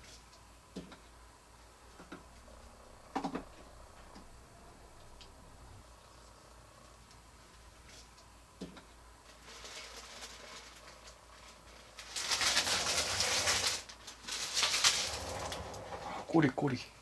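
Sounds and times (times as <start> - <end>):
packing material rustling: 9.2 - 16.1.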